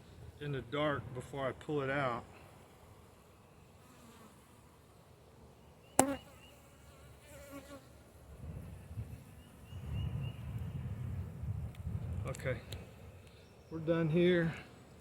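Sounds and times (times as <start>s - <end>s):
honey bees buzzing: 2.4s - 8.2s
bee flying past: 3.6s - 5.1s, 5.9s - 9.6s.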